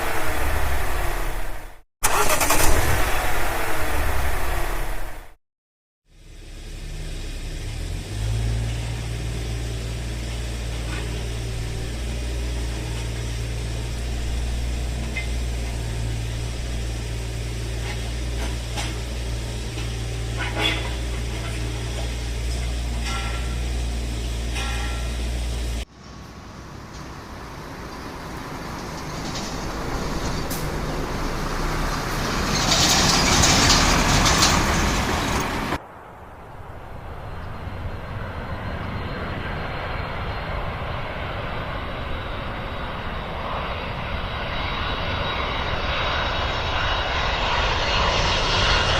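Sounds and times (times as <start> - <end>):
heavy engine low rumble: 0.0 - 5.4, 6.1 - 48.9
vehicle rushing past: 0.0 - 5.4, 25.7 - 43.2.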